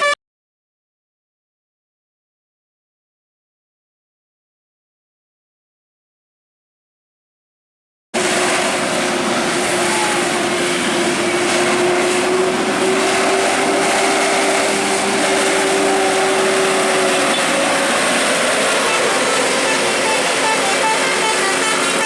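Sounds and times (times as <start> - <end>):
road traffic passing: 8.2 - 22.0.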